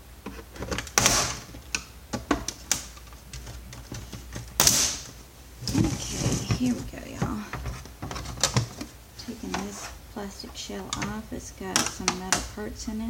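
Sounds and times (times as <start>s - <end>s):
plastic shell cracking: 0.2s - 8.9s
plastic clips clicking and snapping: 0.6s - 5.1s, 10.9s - 12.6s.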